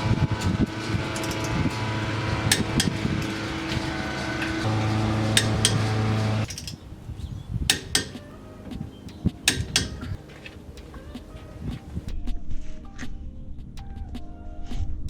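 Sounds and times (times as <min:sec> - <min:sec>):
steady hum: 0:00.0 - 0:06.8
metal tools clinking: 0:00.0 - 0:06.9, 0:09.4 - 0:11.0.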